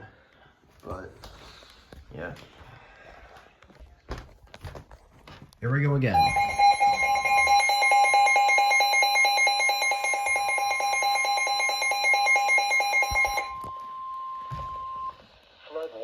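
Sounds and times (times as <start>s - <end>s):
steady warning alarm tone: 6.0s - 15.3s
radio alarms beeping rapidly: 6.1s - 15.2s.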